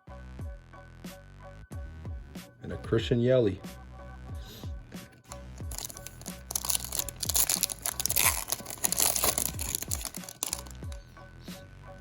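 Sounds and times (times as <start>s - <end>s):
background music with drum beat: 0.0s - 5.7s
packaging crinkling and tearing: 5.3s - 11.0s.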